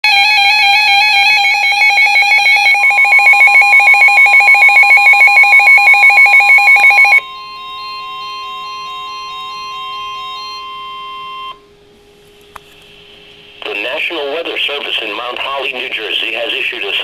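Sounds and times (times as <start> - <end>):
electronic alarm warbling: 0.1 - 11.6
steady alert tone: 1.8 - 7.2.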